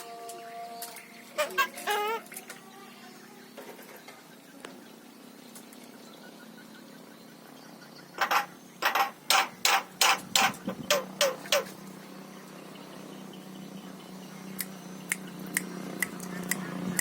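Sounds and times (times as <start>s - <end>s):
myna harsh rasping calls: 1.3s - 2.4s, 8.2s - 11.8s.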